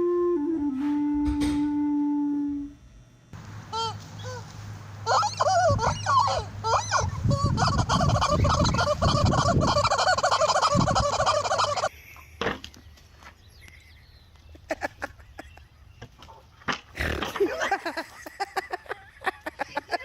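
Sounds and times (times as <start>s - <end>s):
turkeys gobbling: 5.0s - 11.9s.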